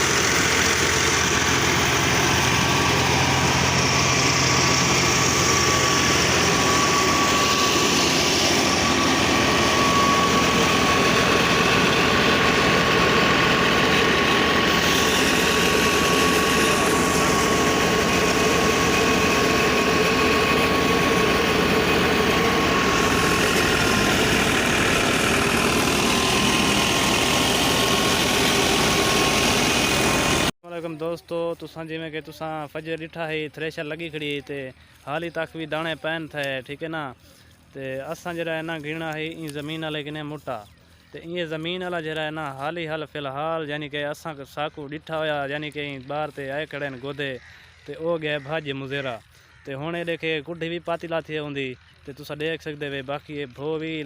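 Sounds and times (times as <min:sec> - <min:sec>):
threshing machine running: 0:00.0 - 0:48.0.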